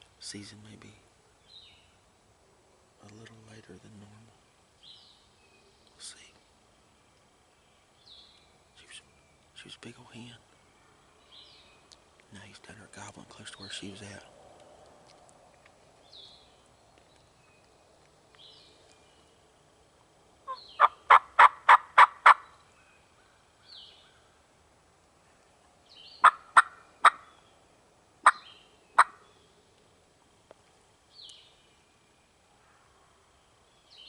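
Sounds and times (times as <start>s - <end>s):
faint songbird chirps: 0.0s - 2.2s, 3.0s - 21.2s, 22.2s - 24.6s, 25.2s - 34.0s
turkey calls: 20.5s - 22.6s, 26.2s - 27.4s, 28.2s - 29.2s.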